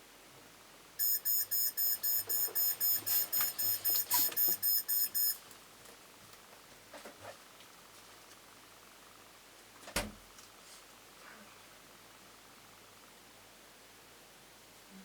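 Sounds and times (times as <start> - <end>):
alarm clock beeping: 1.0 - 5.4.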